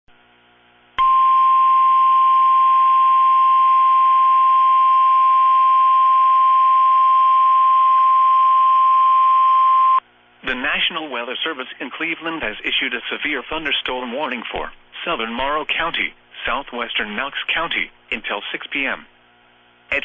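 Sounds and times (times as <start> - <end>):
high alarm tone: 1.0 - 10.0
radio hiss: 10.4 - 19.1.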